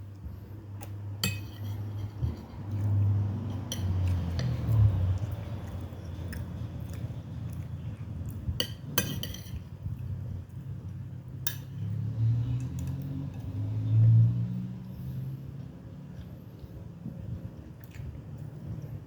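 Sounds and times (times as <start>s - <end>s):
chewing: 0.8s - 8.8s
cutlery clinking against dish: 1.2s - 2.8s, 3.7s - 4.6s, 8.6s - 9.7s.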